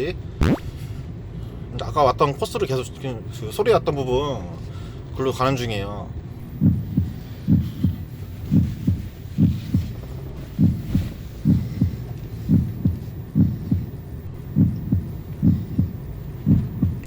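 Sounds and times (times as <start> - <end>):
turn signal ticking: 6.2 - 17.0.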